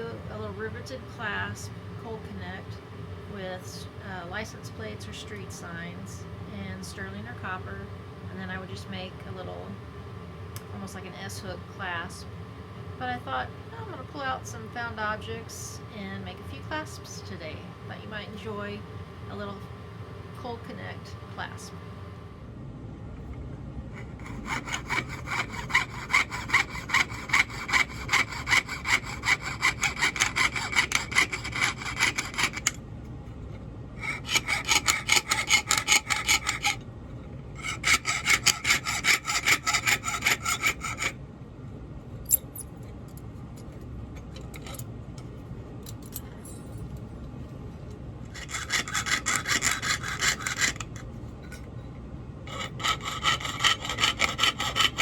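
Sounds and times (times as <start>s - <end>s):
saw sawing through metal: 24.0s - 32.8s, 34.0s - 36.8s, 37.6s - 41.2s, 48.3s - 51.0s, 52.5s - 55.0s.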